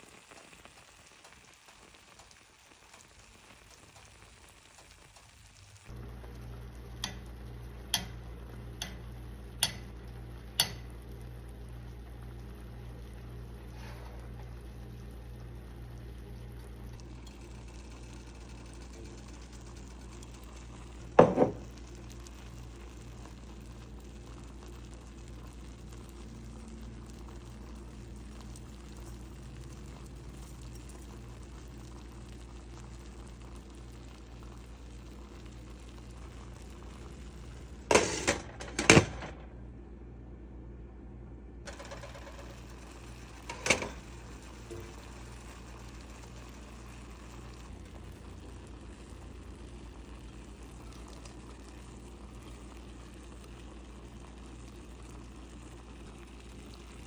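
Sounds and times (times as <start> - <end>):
pot bubbling: 0.0 - 39.1, 41.6 - 57.0
knocks: 21.2 - 21.6.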